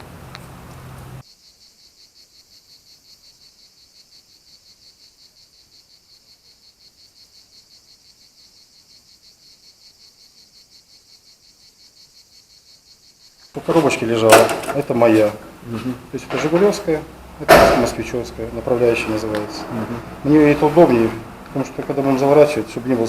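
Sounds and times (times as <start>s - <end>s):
cricket chirping: 1.2s - 23.0s.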